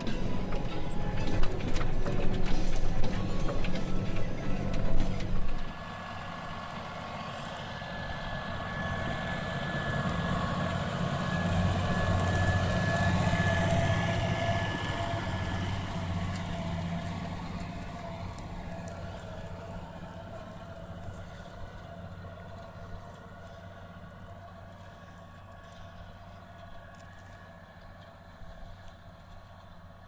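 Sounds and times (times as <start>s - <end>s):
thin steady whine: 0.0s - 30.0s
tractor engine under load: 0.0s - 30.0s.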